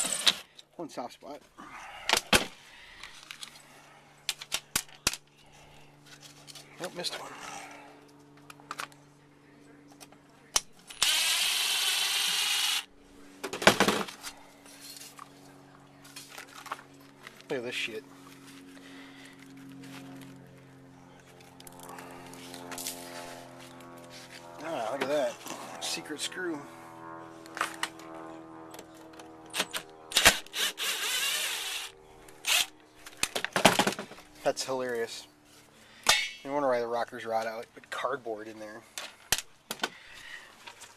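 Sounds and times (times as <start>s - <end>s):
rasping whirring tool noise: 10.9s - 12.9s, 21.2s - 33.4s
cordless drill running: 11.0s - 12.9s, 30.1s - 32.8s.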